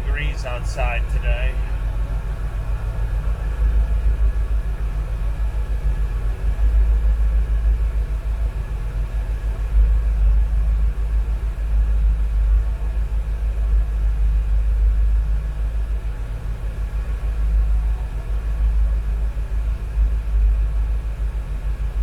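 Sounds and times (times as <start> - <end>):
car engine idling: 0.0 - 4.6
air conditioning running: 0.0 - 22.0.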